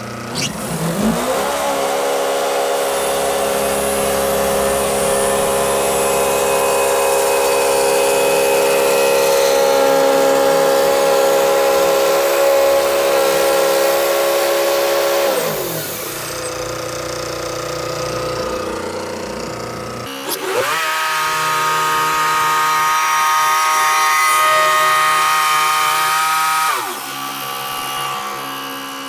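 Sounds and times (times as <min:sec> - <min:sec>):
bandsaw sawmill engine: 0:00.0 - 0:29.0.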